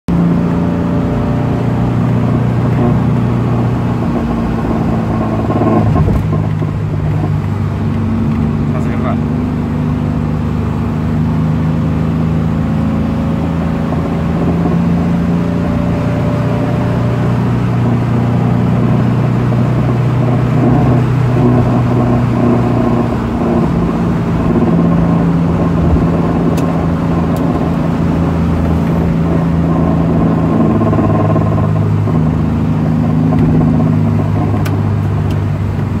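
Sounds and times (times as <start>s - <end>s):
car engine running: 0.1s - 36.0s
car rattle: 2.1s - 9.2s, 19.4s - 36.0s.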